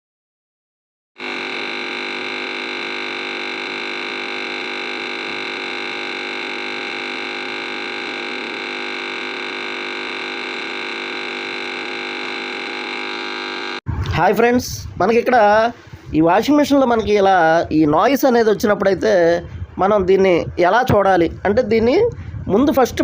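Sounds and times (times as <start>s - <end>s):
washing machine drain motor humming: 1.2s - 13.8s.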